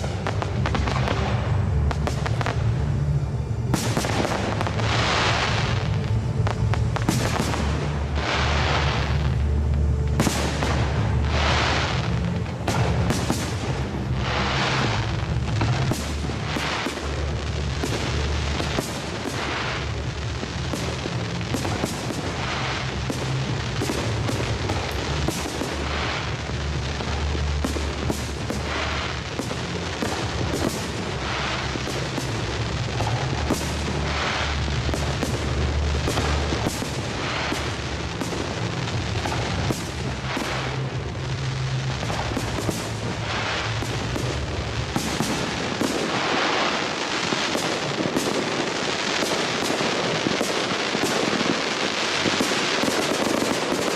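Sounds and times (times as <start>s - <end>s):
music with low beat: 0.0s - 46.4s
fireworks bangs and cracks: 0.0s - 53.9s
fireworks hissing crackling bursts: 0.0s - 53.9s
loud music with bass: 0.1s - 6.0s.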